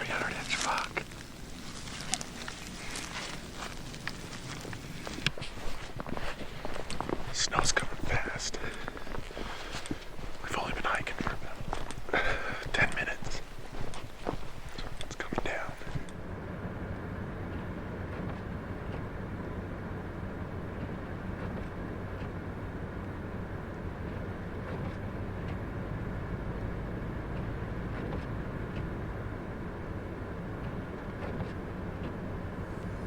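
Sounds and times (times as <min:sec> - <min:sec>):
faint ticks: 0:00.2 - 0:16.2.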